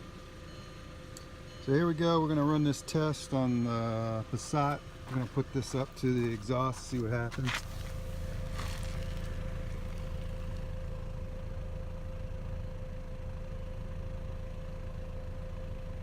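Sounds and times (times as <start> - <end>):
car exhaust idling rumble: 0.0 - 16.0
thin steady tone: 0.1 - 7.0.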